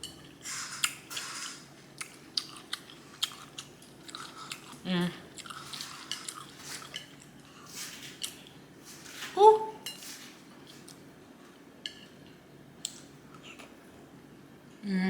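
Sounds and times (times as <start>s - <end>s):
chewing food: 0.6s - 9.3s.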